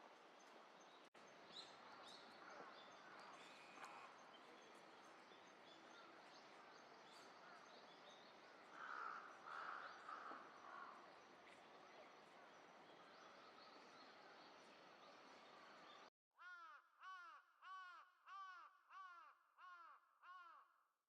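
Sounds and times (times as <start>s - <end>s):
crow cawing: 8.7s - 11.0s, 16.4s - 20.7s.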